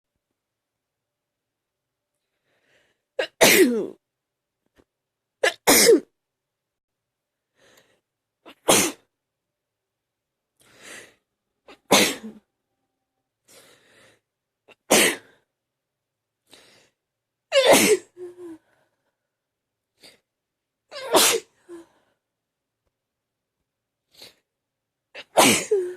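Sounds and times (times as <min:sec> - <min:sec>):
quiet breaths: 0:02.1 - 0:03.2, 0:07.4 - 0:08.2, 0:13.4 - 0:14.4, 0:16.4 - 0:17.1
person sneezing: 0:03.2 - 0:04.0, 0:05.4 - 0:06.1, 0:08.5 - 0:09.1, 0:11.7 - 0:12.4, 0:14.8 - 0:15.4, 0:17.5 - 0:18.5, 0:20.9 - 0:21.8, 0:25.2 - 0:25.9.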